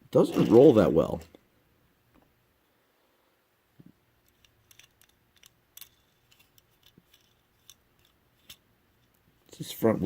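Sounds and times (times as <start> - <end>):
toy car clicking and ticking: 4.2 - 8.6.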